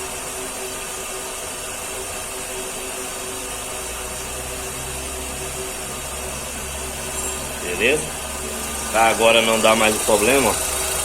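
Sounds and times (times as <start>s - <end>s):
car engine idling: 4.3s - 11.0s.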